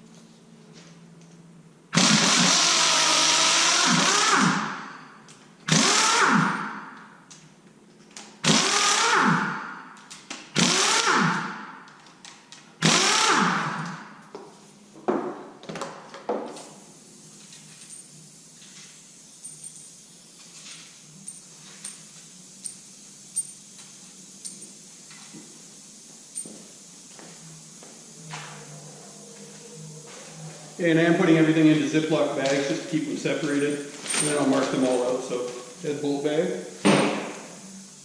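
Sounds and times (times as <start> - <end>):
power tool spinning bolts: 2.0 - 7.0, 8.4 - 12.1, 12.8 - 14.0, 19.1 - 20.2, 21.2 - 24.8.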